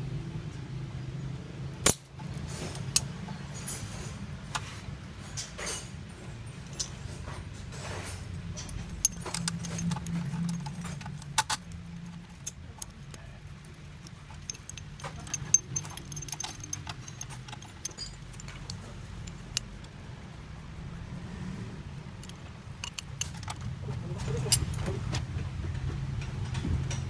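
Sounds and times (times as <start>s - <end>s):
metal tools clinking and tapping: 6.6s - 19.7s, 22.2s - 25.1s.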